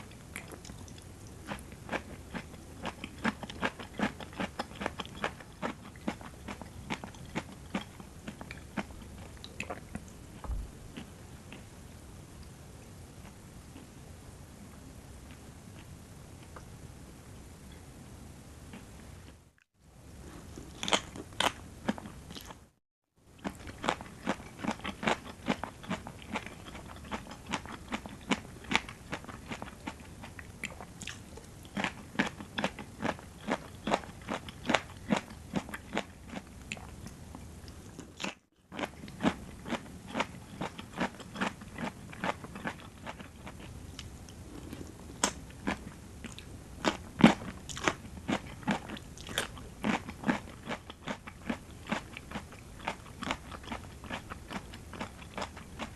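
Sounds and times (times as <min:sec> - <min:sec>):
crunchy chewing: 0:00.0 - 0:11.7, 0:23.4 - 0:55.9.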